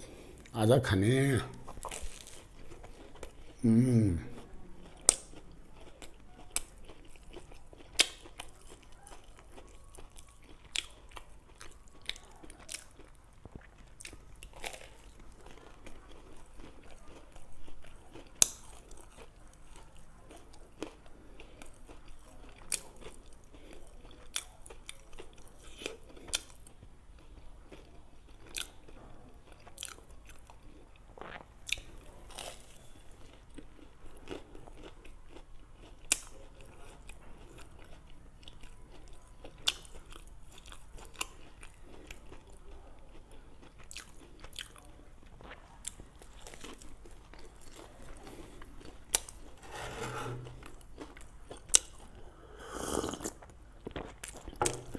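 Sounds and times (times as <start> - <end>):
person biting and chewing: 1.5 - 3.6, 5.0 - 8.8.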